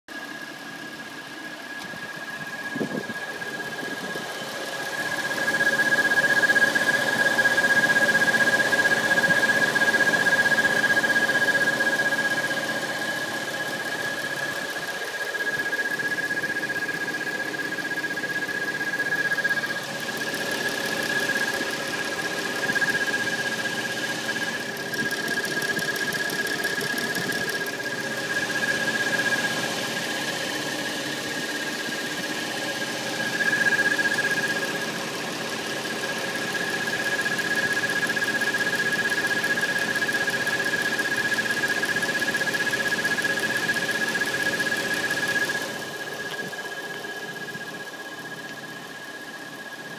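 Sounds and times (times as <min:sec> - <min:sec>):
car engine humming: 0:00.2 - 0:37.0
high-pitched water pump whistle: 0:01.7 - 0:49.9.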